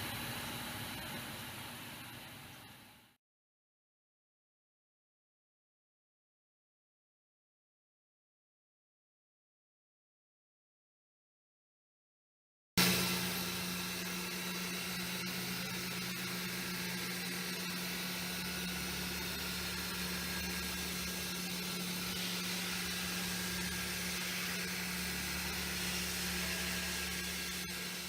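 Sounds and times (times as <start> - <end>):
milling machine humming: 0.0 - 2.8, 12.8 - 28.0.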